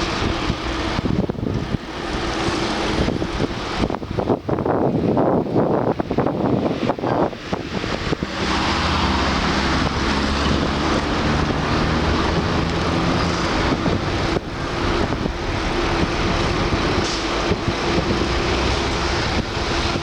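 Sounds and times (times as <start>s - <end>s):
road and wind noise: 0.0s - 20.0s.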